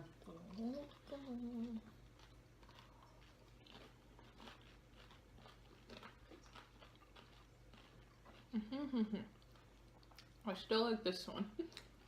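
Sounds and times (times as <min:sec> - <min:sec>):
people crunching crisp food: 0:00.4 - 0:10.4.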